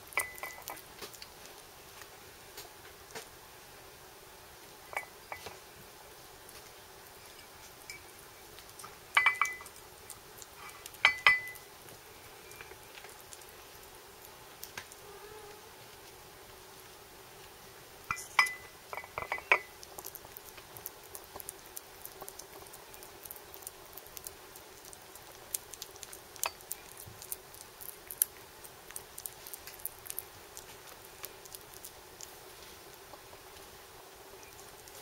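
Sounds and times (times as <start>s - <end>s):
kitten eating clicks: 0.1s - 1.7s, 18.5s - 33.4s
clinks against a dish: 0.2s - 0.8s, 4.9s - 5.5s, 9.2s - 9.7s, 11.0s - 11.6s, 18.1s - 19.7s.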